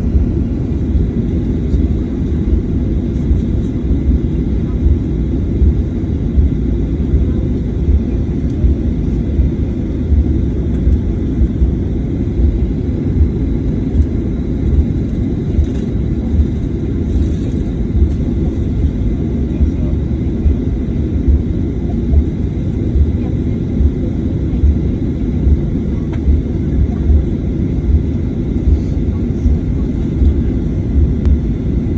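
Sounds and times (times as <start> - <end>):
faint steady whine: 0.0 - 31.9
jet engine rumble in cabin: 0.0 - 31.9.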